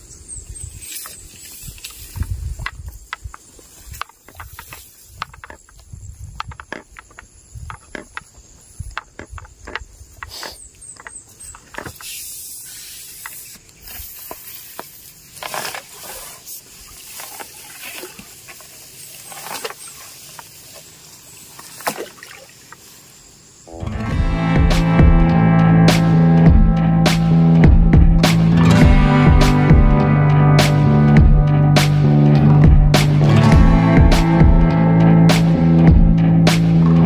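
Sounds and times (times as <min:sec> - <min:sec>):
water splashing: 0:14.0 - 0:23.1.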